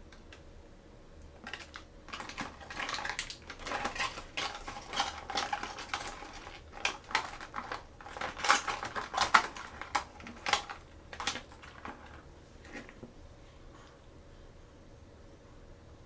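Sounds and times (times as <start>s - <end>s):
plastic toy pieces clattering: 1.4s - 13.0s.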